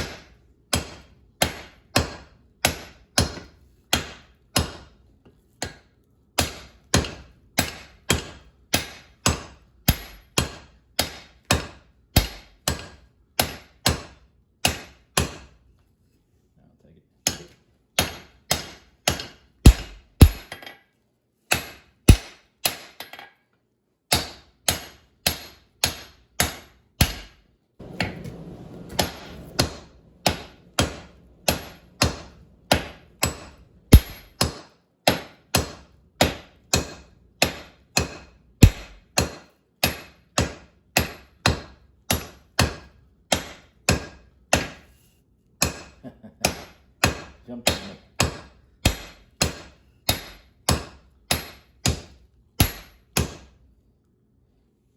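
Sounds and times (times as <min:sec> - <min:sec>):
hammer ringing on hot steel: 0:19.7 - 0:20.6, 0:29.0 - 0:34.6, 0:38.6 - 0:39.0, 0:52.6 - 0:53.4.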